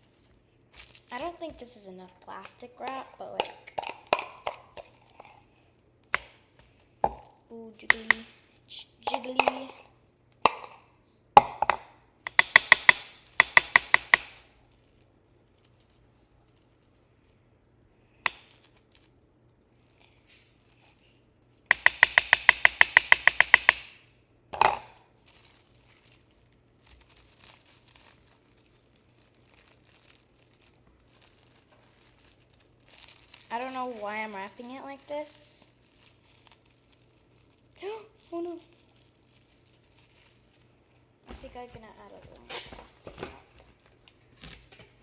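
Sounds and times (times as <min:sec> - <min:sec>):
plastic wrap crackling off roll: 0:00.0 - 0:03.0, 0:25.1 - 0:45.0
plastic film crinkling: 0:00.0 - 0:09.4, 0:14.2 - 0:17.3, 0:18.4 - 0:21.6, 0:25.1 - 0:45.0.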